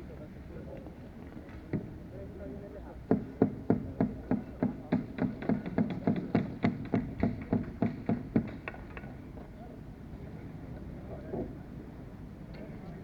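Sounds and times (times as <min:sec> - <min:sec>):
rapid sharp knocks: 0:03.1 - 0:08.8.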